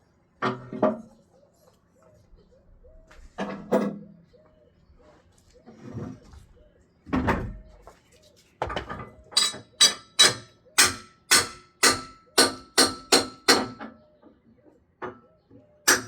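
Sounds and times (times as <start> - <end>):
sharp ringing knocks: 9.3 - 14.0.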